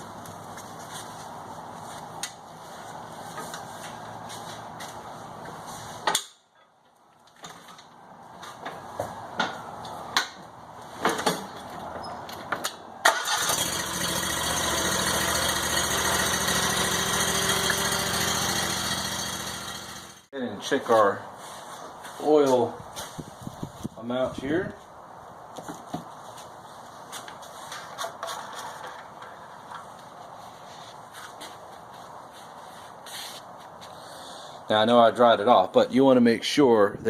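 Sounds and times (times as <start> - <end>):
mower engine starting and running: 13.0 - 20.3, 28.0 - 29.8.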